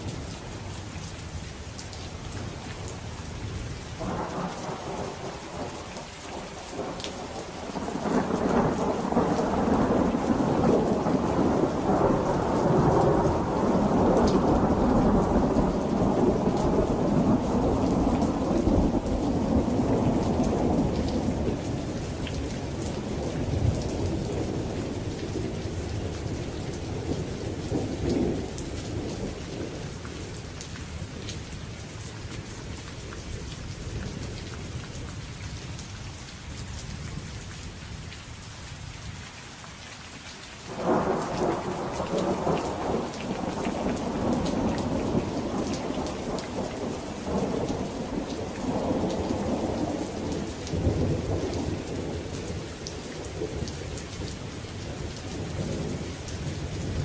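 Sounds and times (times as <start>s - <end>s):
steady rain: 0.0s - 57.0s
low thunder rumble: 4.0s - 30.0s, 40.7s - 52.4s.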